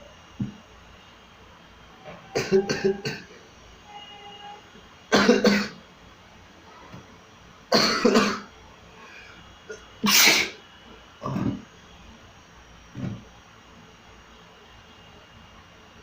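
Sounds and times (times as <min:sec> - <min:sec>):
person sneezing: 0:09.7 - 0:10.6.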